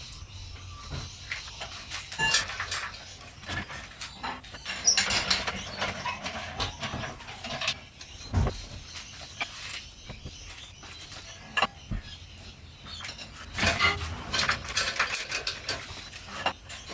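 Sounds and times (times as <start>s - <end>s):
tools and parts clanking: 2.1s - 16.9s
dull thud: 8.2s - 9.0s, 11.8s - 12.4s.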